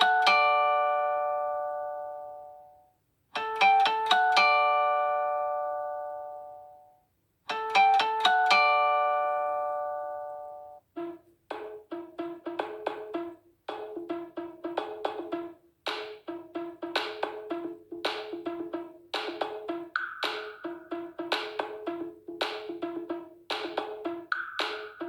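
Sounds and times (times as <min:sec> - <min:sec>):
wood-block-like ringtone: 0:07.5 - 0:25.0.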